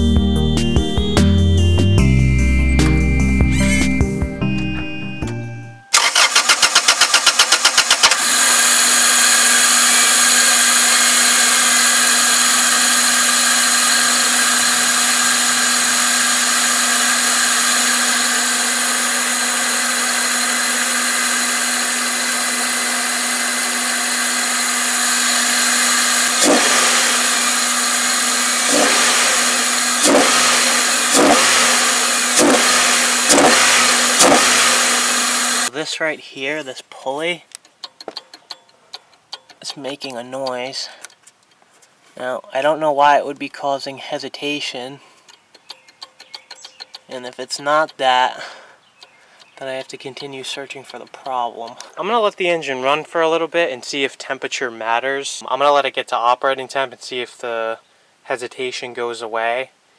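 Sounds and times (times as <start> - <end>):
car engine cranking: 5.9 - 35.7
car engine idling: 5.9 - 35.7
engine revving in sharp surges: 5.9 - 35.7.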